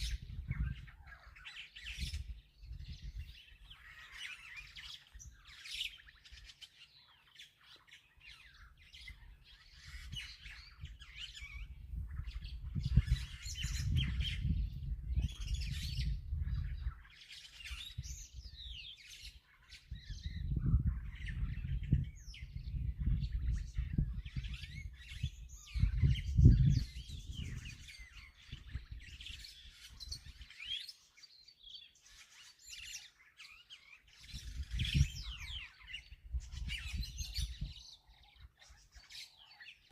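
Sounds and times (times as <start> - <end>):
birds chirping and whistling: 0.0 - 39.9.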